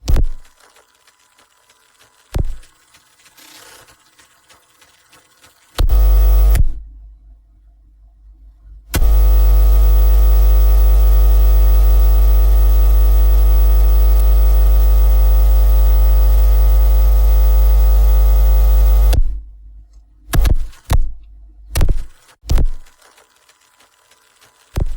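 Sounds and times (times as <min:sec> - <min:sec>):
loud mains hum and buzz: 0:09.0 - 0:19.2.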